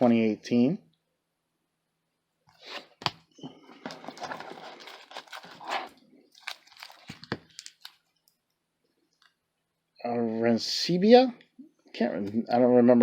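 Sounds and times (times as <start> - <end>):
cards and wrapping crinkling: 3.0 - 8.4.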